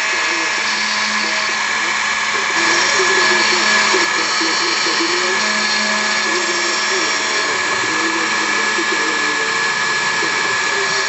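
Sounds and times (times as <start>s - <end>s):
router cutting noise: 0.0s - 11.0s
spindle high whine: 0.0s - 11.0s
stepper motors wavering tones: 0.0s - 11.0s.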